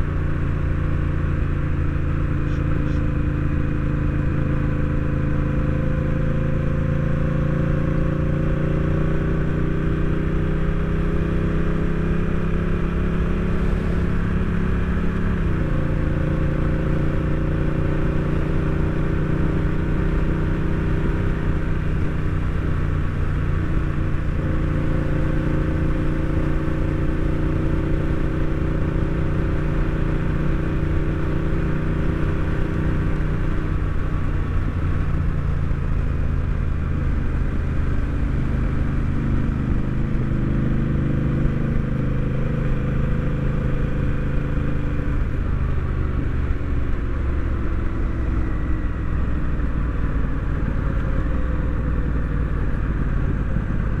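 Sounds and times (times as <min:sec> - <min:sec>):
motorcycle engine accelerating: 0:00.0 - 0:54.0.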